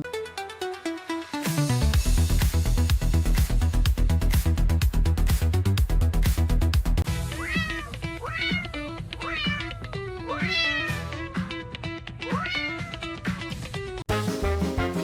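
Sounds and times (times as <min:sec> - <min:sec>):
background music with beat: 0:00.0 - 0:07.4, 0:08.0 - 0:15.0
cat meowing: 0:07.3 - 0:11.6, 0:12.2 - 0:13.4.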